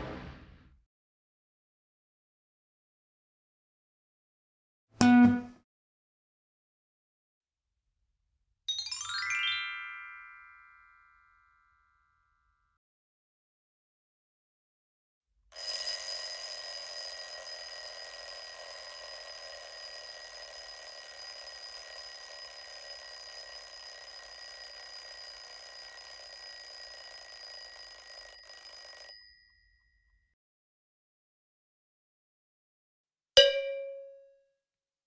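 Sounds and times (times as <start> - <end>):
alarm bell ringing: 15.6 - 30.0.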